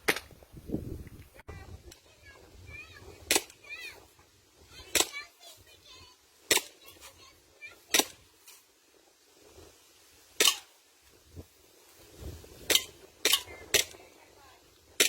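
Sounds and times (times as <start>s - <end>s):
airsoft pistol shots: 6.5s - 6.8s, 10.4s - 10.8s.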